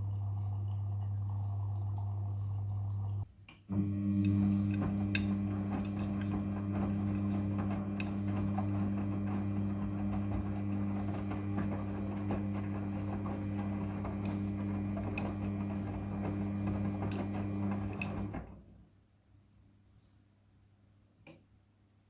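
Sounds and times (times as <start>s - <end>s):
washing machine motor hum: 0.0s - 18.7s
washing machine clicks: 3.7s - 18.5s.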